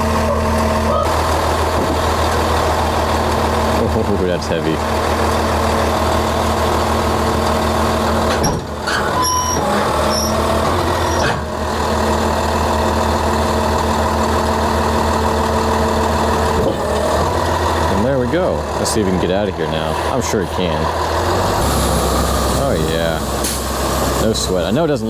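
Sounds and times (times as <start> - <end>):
heavy diesel engine running: 0.0 - 25.0.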